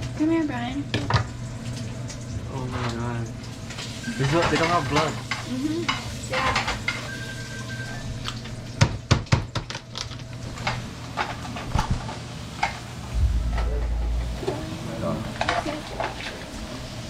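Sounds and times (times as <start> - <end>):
steady low hum: 13.1 - 15.4.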